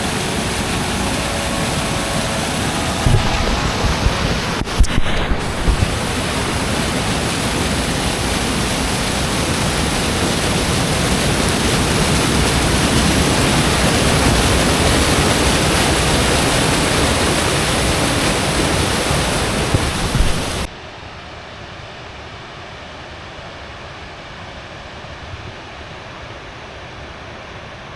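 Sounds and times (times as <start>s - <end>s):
waterfall rushing: 0.0s - 20.7s.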